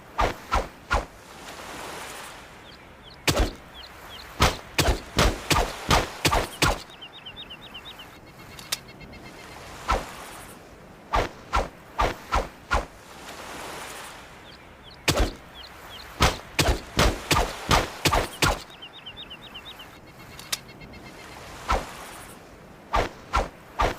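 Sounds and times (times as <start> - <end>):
birds chirping: 1.7 - 10.6, 13.5 - 22.4
machete chopping: 4.4 - 6.8, 16.2 - 18.6.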